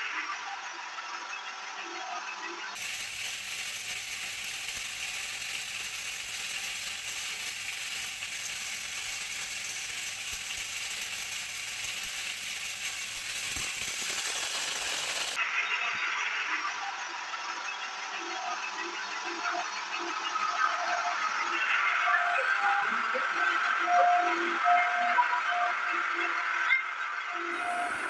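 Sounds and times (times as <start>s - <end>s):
machine clattering: 2.8s - 15.4s.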